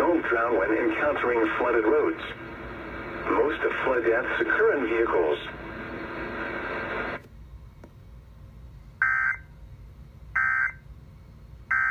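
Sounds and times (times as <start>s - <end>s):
radio audio: 0.0s - 7.2s.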